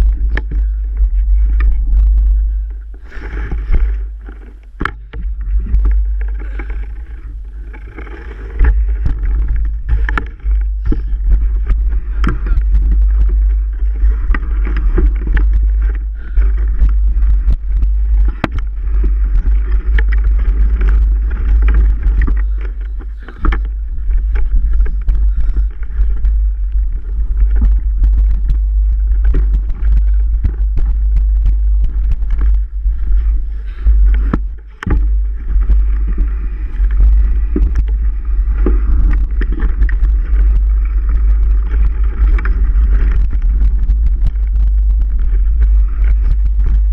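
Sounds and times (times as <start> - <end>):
bike clicks and rattles: 0.0 - 46.9
bike tyre noise: 0.0 - 46.9
wind rumble on microphone: 0.0 - 46.9.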